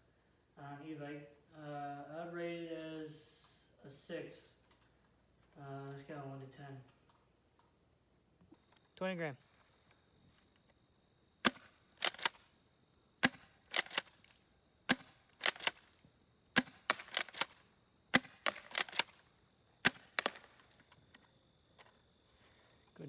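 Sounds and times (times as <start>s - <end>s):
airsoft shotgun snaps and clicks: 11.4s - 12.5s, 13.2s - 16.0s, 16.6s - 21.0s.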